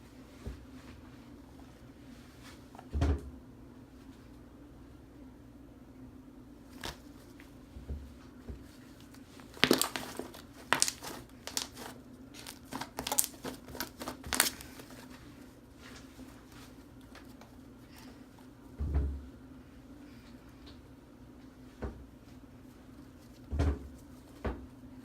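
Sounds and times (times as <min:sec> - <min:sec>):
slime popping and crackling: 0:09.4 - 0:14.8.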